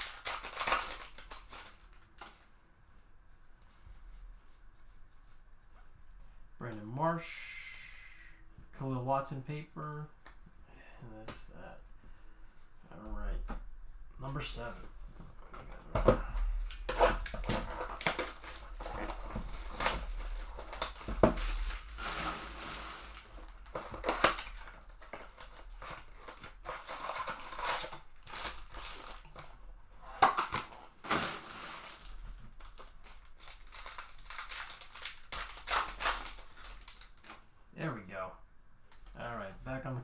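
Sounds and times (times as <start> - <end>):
plastic and foil wrapping crinkling: 0.0 - 2.6, 14.4 - 37.5.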